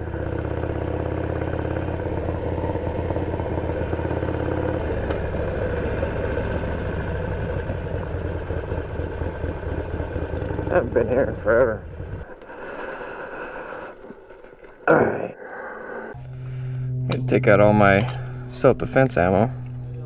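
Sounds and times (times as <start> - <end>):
motorcycle engine running: 0.0 - 12.3, 16.1 - 20.0.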